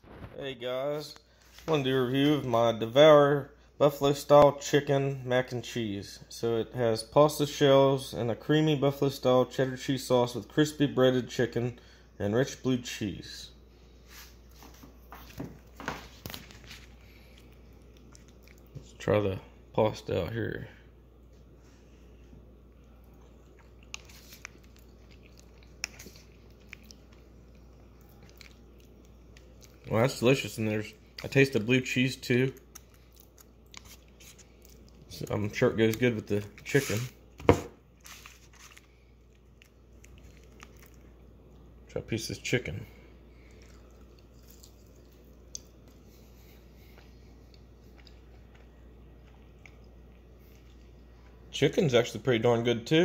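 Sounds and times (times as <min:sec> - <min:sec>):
low steady hum: 0:00.0 - 0:53.0
man chewing food: 0:14.3 - 0:19.0, 0:21.2 - 0:30.4, 0:32.3 - 0:35.6, 0:36.2 - 0:41.9, 0:43.1 - 0:51.5.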